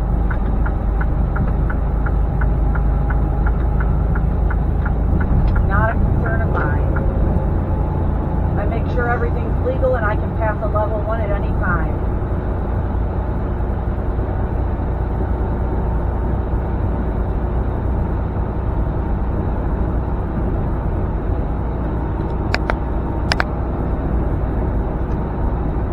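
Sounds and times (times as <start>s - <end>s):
diesel truck engine drone: 0.0s - 25.9s.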